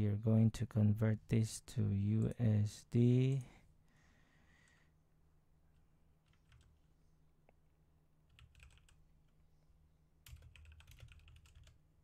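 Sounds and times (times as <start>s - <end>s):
typing on computer keyboard: 6.2s - 6.7s, 8.3s - 9.0s, 10.2s - 11.8s.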